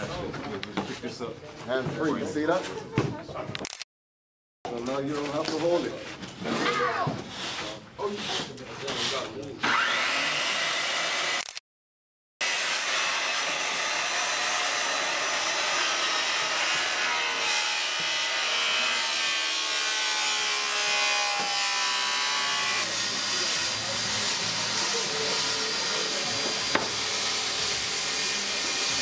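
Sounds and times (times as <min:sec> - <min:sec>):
saw cutting through wood: 0:05.3 - 0:11.6, 0:12.4 - 0:29.0
sharp click: 0:11.4 - 0:11.6.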